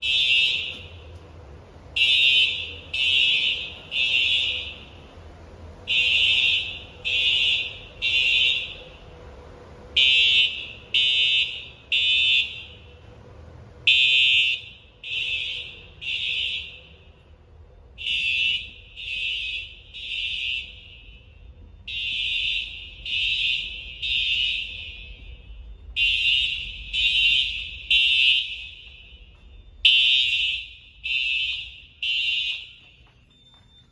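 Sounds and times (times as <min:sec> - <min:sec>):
fire alarm horn blasts: 0:00.0 - 0:01.3, 0:02.0 - 0:13.2, 0:13.8 - 0:33.9.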